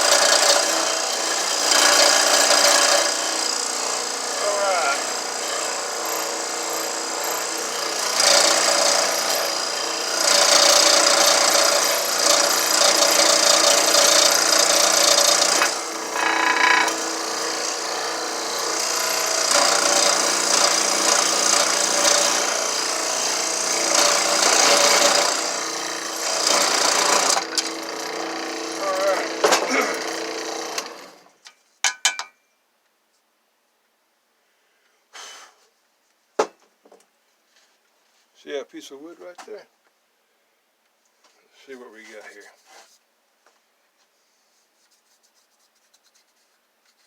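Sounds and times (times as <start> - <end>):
electric saw cutting wood: 0.0 - 31.3.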